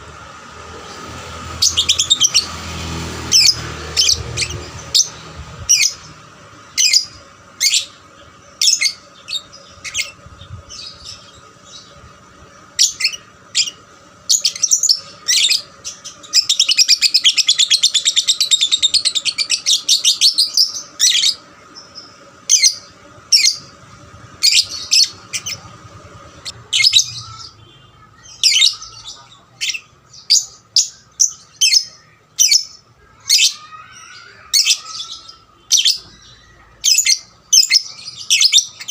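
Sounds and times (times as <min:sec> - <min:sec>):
lovebird chattering trill: 0:03.3 - 0:12.0, 0:24.4 - 0:25.8, 0:26.4 - 0:38.9
lovebird chirping: 0:26.4 - 0:32.8.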